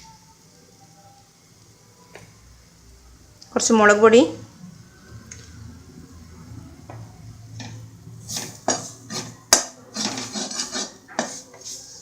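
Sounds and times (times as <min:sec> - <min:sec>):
spoon scraping a pan: 0:07.6 - 0:12.0.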